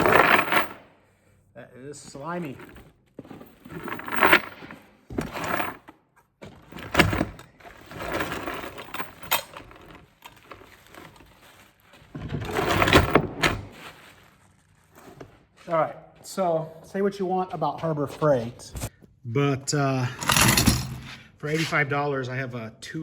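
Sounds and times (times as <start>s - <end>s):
chain rattling and clinking: 0.0s - 0.8s, 2.4s - 5.8s, 6.7s - 11.1s, 12.5s - 13.7s, 20.2s - 21.2s.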